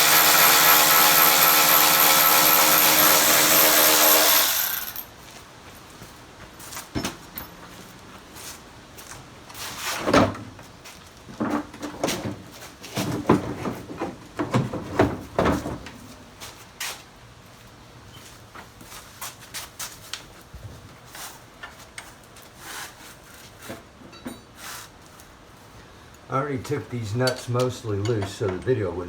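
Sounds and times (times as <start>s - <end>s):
hand tools and metal parts clinking: 0.0s - 5.9s, 6.5s - 8.0s, 26.6s - 28.8s.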